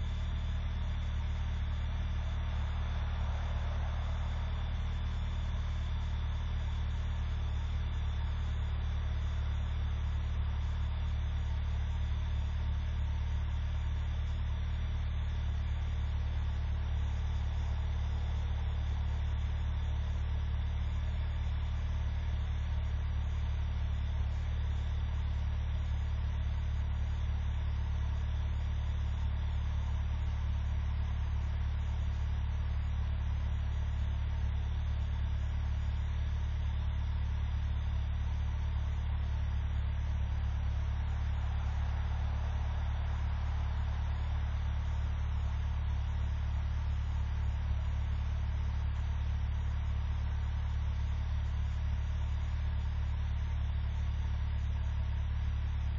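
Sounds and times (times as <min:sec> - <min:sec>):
engine idling: 0:00.0 - 0:55.9.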